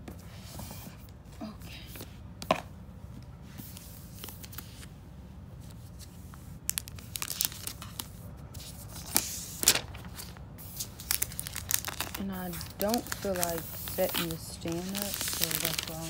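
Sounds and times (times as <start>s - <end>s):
packaging tearing and rustling: 6.7s - 8.1s, 8.9s - 16.0s.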